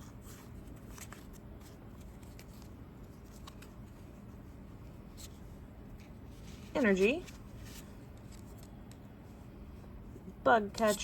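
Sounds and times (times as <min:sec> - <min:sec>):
trading cards rustling: 0:00.0 - 0:09.1
soft clicks of card edges: 0:00.6 - 0:04.1, 0:07.1 - 0:09.1.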